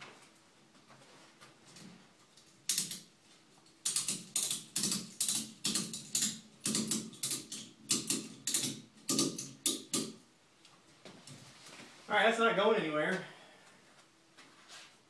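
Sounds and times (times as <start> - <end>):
ratchet strap clicking: 3.9 - 10.1.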